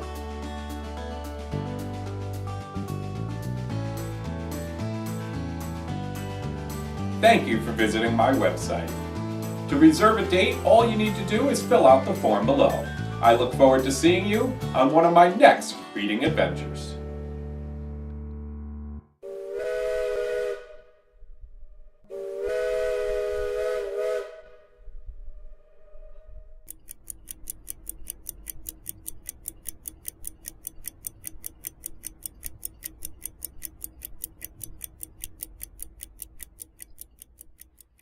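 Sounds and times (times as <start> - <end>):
train whistle blasts: 19.2 - 21.1, 22.1 - 25.0
rapid even ticking: 26.7 - 38.0.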